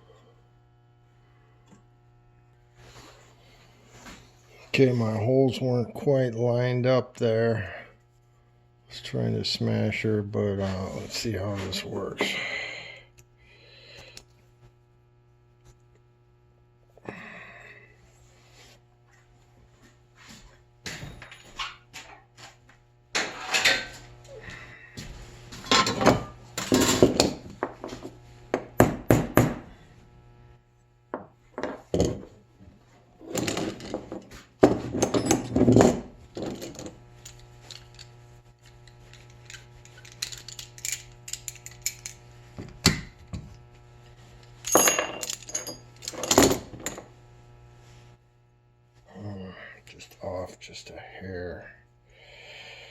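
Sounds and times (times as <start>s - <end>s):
steady low hum: 0.0s - 52.9s
metal parts clinking and scraping: 23.2s - 24.0s, 33.2s - 34.3s, 34.9s - 42.2s, 44.4s - 47.1s.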